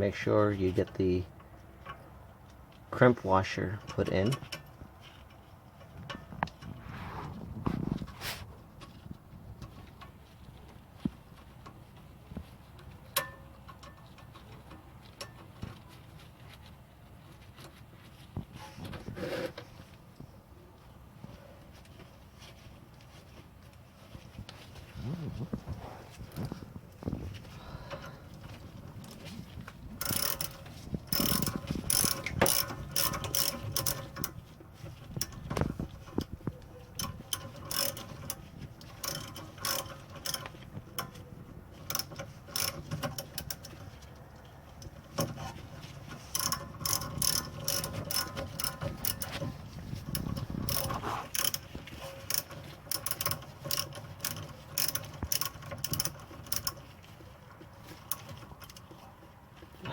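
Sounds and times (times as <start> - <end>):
ratchet wrench clicking: 30.0 - 34.4, 37.0 - 41.1, 41.8 - 43.8, 46.3 - 49.4, 50.1 - 56.8.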